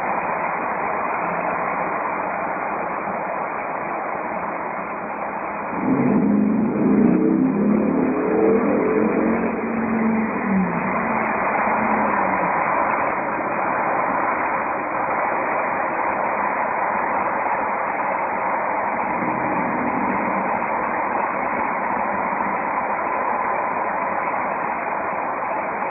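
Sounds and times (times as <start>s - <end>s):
road noise: 0.0s - 25.9s
car exhaust rumble while cruising: 5.6s - 16.1s, 18.8s - 25.6s.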